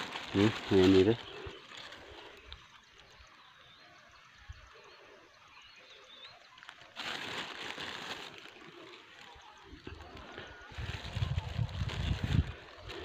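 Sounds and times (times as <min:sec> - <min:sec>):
loud rustling: 0:00.0 - 0:02.4, 0:06.9 - 0:13.0
faint bird chirps: 0:00.0 - 0:13.0.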